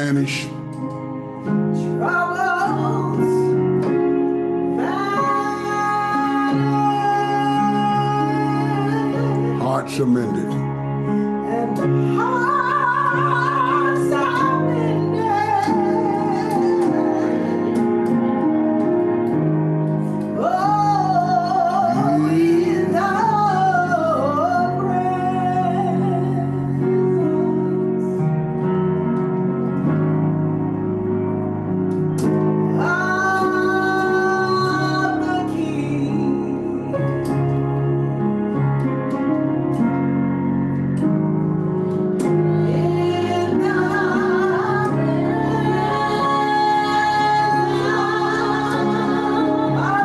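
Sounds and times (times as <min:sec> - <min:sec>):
guitar: 0:00.0 - 0:50.0
instrumental accompaniment: 0:00.0 - 0:50.0
keyboard: 0:00.0 - 0:50.0
group singing worship song: 0:04.6 - 0:09.7, 0:11.4 - 0:28.2, 0:42.0 - 0:50.0.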